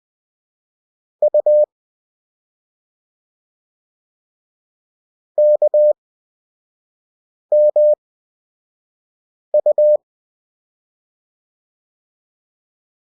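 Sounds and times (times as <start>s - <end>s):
morse code beeps: 1.2s - 1.7s, 5.4s - 6.0s, 7.5s - 8.0s, 9.6s - 10.0s.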